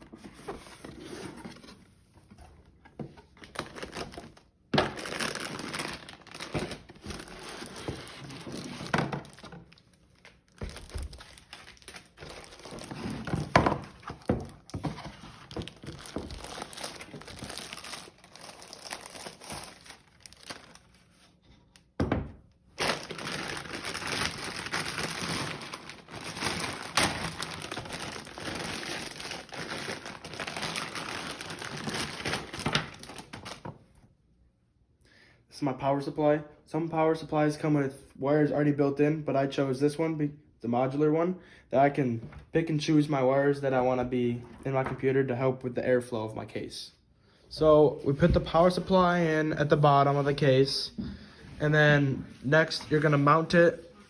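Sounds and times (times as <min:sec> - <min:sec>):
packaging crinkling and rustling: 0:03.3 - 0:21.9, 0:22.7 - 0:33.8
box and parts thunking: 0:12.2 - 0:17.6.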